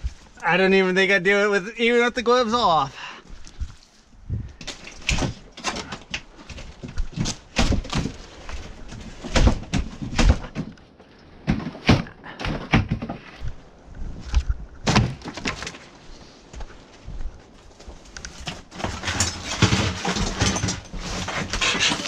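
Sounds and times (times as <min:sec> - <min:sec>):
debris knocking and clattering: 0:18.4 - 0:22.0.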